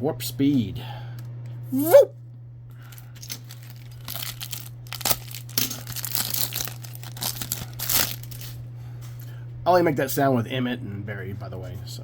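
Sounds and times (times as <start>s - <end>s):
steady low hum: 0.0s - 12.0s
wrappers crinkling: 2.8s - 8.6s.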